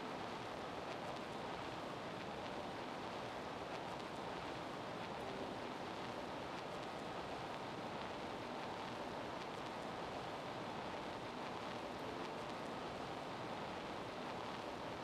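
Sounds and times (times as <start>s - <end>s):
steady hiss: 0.0s - 15.0s.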